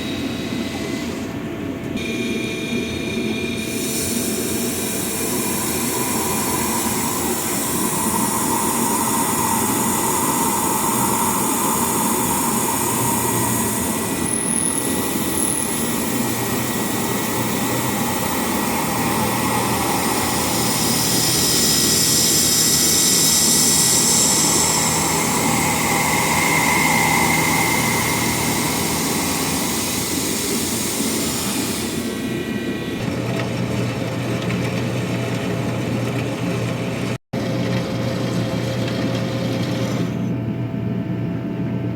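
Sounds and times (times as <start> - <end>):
milling machine cutting: 2.0 - 40.3
high hiss of cutting: 3.6 - 32.5.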